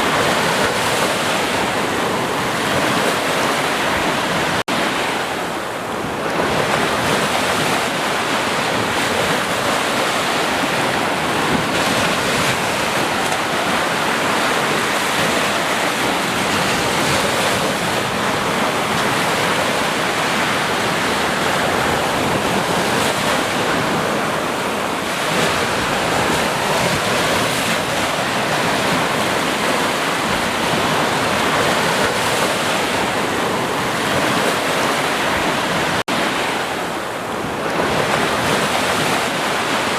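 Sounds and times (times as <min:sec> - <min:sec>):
waves breaking: 0:00.0 - 0:39.9.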